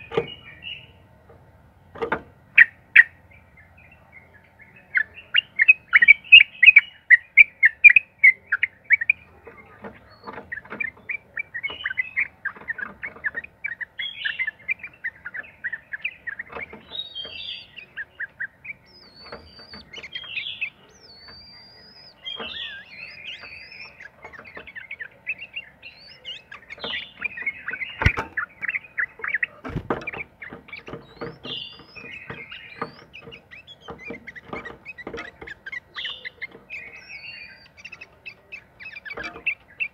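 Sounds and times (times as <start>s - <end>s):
bird chattering song: 0.0s - 39.9s
high whistled bird notes: 11.4s - 39.9s
soft knocks: 26.8s - 28.4s, 29.6s - 35.6s.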